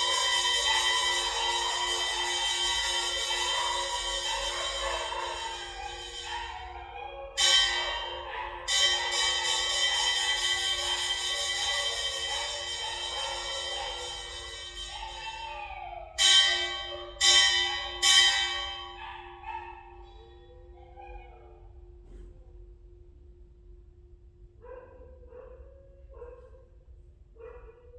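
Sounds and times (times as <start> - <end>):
bell-like chimes: 0.0 - 20.6.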